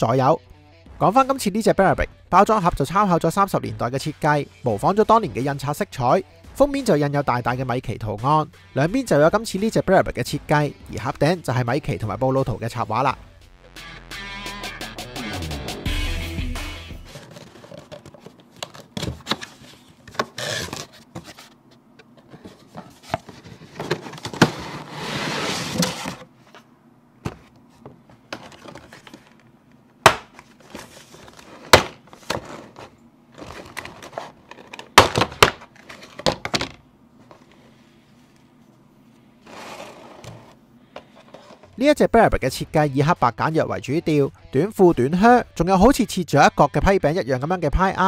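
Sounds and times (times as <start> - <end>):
cardboard and plastic packaging rustling: 17.0 - 29.4, 30.3 - 37.7.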